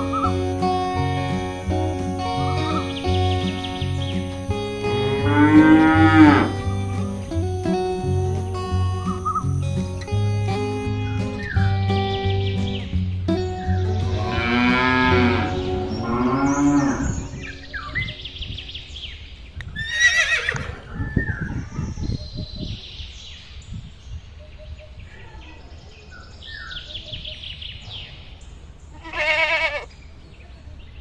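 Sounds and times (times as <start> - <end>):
cow mooing: 0.0 - 7.4, 14.1 - 18.1
background music: 0.0 - 19.2
bird chirps: 0.0 - 19.9, 21.0 - 28.9
higher animal call: 14.2 - 18.3.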